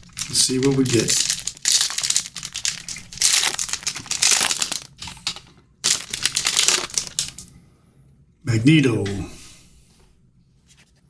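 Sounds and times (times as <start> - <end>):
card pack wrapper crinkling: 0.0 - 7.5.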